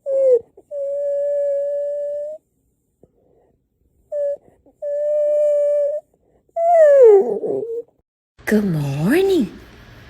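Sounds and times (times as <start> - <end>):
dog whining: 0.0 - 2.5, 3.2 - 8.0.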